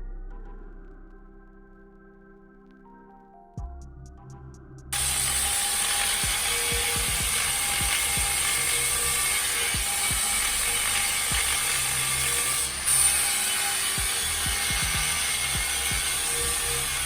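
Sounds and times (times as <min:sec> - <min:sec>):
power tool high-pitched whine: 0:05.0 - 0:17.0.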